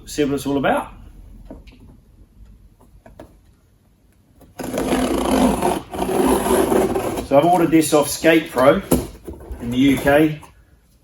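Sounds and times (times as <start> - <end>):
packing tape ripping from cardboard: 4.5 - 7.5.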